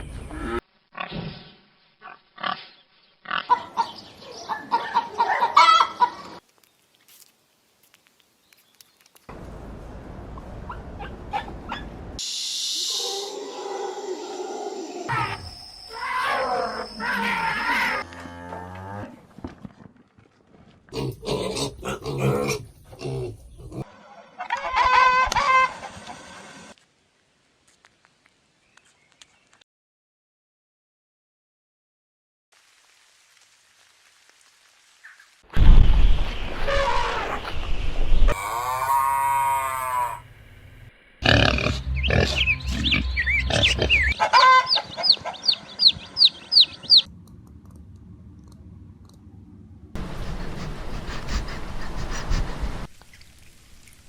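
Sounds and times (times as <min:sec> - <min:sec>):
chickens clucking and squawking: 0:03.5 - 0:06.4, 0:23.6 - 0:26.4, 0:42.0 - 0:47.1
high-pitched animal call: 0:12.7 - 0:18.3, 0:38.3 - 0:40.3, 0:41.2 - 0:47.1
low pitched animal calls: 0:12.8 - 0:18.5, 0:38.3 - 0:40.4, 0:41.2 - 0:47.1.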